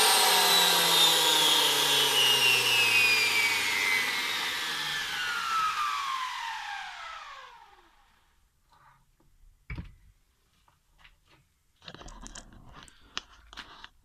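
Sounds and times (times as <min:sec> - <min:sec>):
electric planer motor spinning down: 0:00.0 - 0:08.2.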